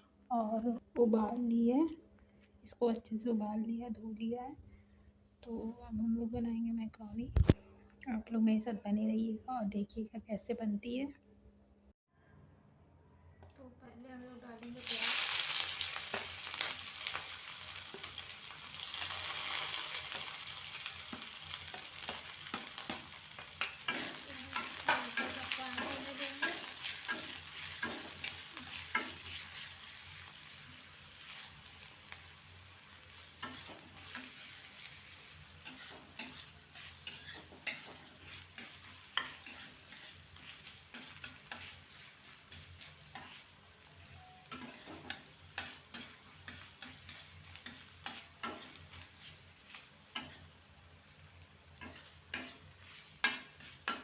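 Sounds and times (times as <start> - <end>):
onion sizzling in hot oil: 14.3 - 54.0
spatula tapping and scraping pan: 21.1 - 29.7, 33.4 - 34.9, 35.6 - 43.5, 44.2 - 50.6, 51.8 - 54.0.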